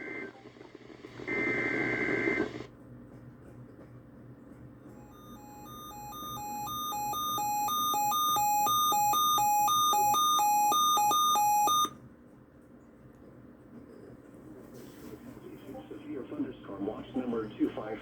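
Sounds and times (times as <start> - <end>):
alternating electronic beep tones: 5.0 - 11.9.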